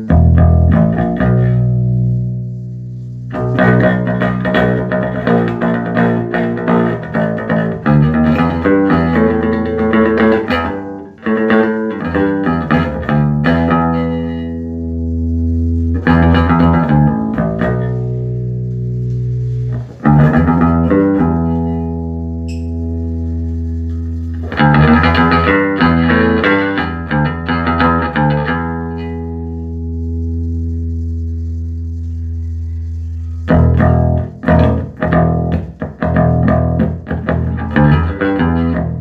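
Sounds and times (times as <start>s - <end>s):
electric bass guitar: 0.0s - 39.0s.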